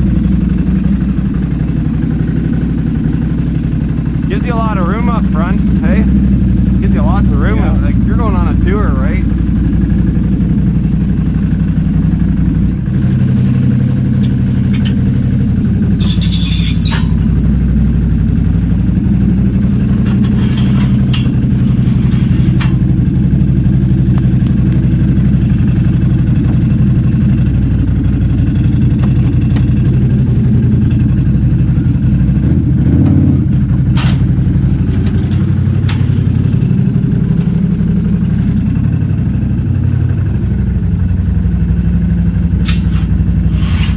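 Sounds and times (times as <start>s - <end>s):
vehicle engine running: 0.0s - 43.9s.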